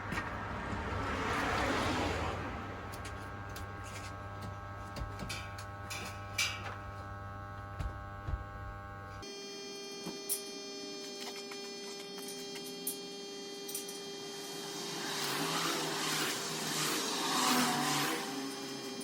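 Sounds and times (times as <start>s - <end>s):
steady electrical hum: 2.9s - 16.4s.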